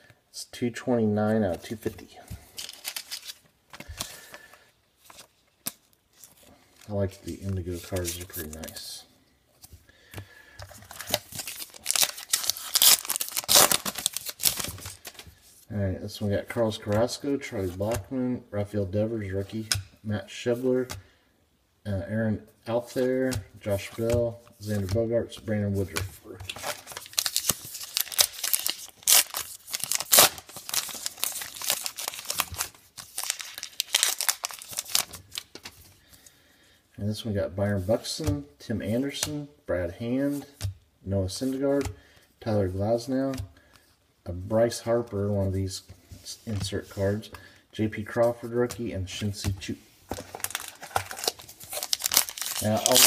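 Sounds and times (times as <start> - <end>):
card pack wrapper tearing: 2.5 - 4.3, 10.9 - 15.2, 26.5 - 35.7, 50.1 - 53.0.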